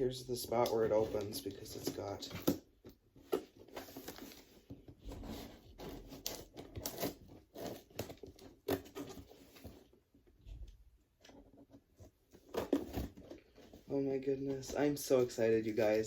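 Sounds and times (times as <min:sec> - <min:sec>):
box rustling and scraping: 0:00.4 - 0:10.0, 0:11.3 - 0:15.9
packing tape and cardboard tearing: 0:05.1 - 0:09.8.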